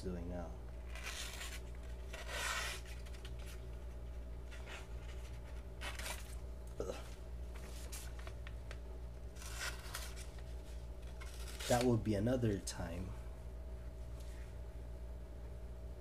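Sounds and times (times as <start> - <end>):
steady low hum: 0.0 - 16.0
paper and knife rustling: 9.4 - 12.0.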